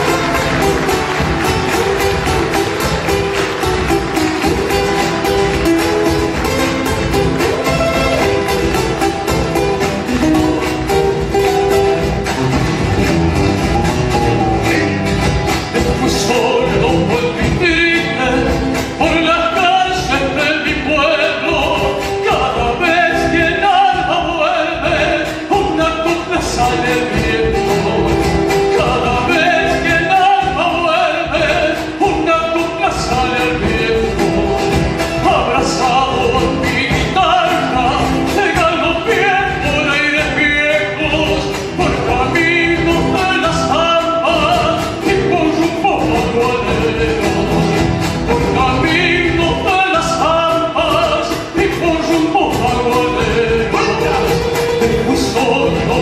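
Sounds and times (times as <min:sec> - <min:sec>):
guitar accompaniment: 0:00.0 - 0:56.0
person singing: 0:13.4 - 0:56.0.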